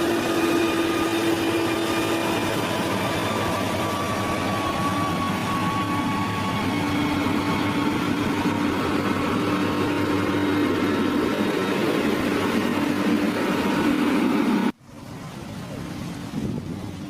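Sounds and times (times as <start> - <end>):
heavy machine engine running: 0.0 - 14.8.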